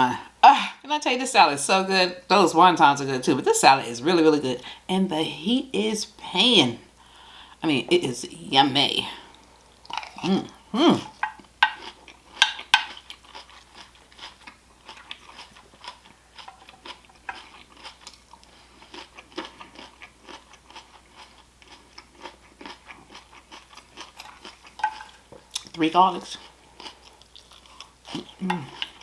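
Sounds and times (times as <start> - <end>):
person chewing crunchy food: 9.3 - 29.0.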